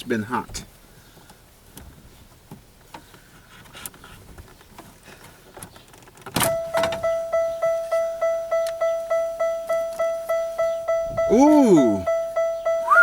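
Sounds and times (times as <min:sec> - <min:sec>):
car warning chime dinging: 0:06.4 - 0:13.0.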